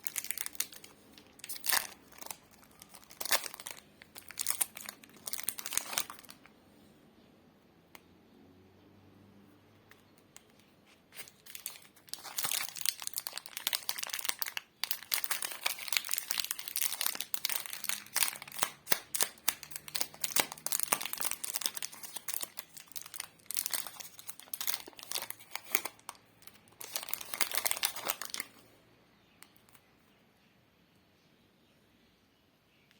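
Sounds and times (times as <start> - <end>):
plastic wrappers crinkling and tearing: 0.0 - 6.5, 10.4 - 28.6.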